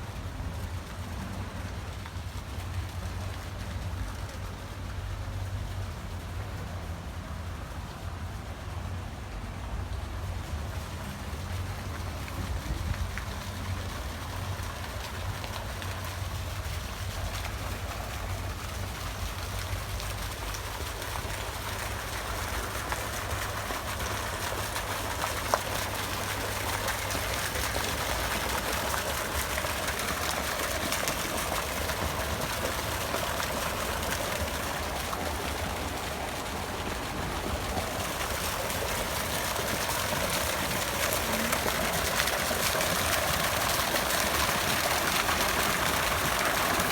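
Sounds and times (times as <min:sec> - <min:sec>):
running water: 0:09.9 - 0:46.9.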